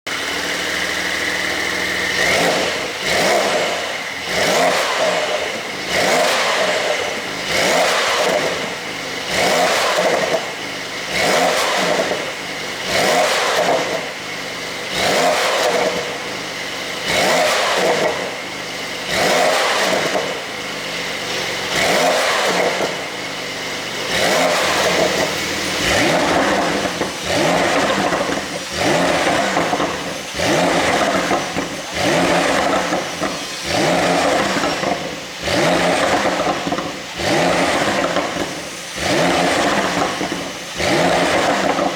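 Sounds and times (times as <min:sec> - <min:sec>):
car engine revving: 0:00.0 - 0:41.9
exhaust pops and crackles: 0:24.1 - 0:41.9.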